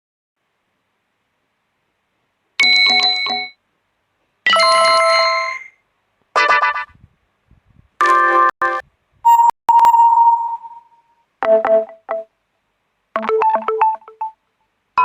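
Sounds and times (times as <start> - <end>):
phone notification chimes: 13.2 - 14.4.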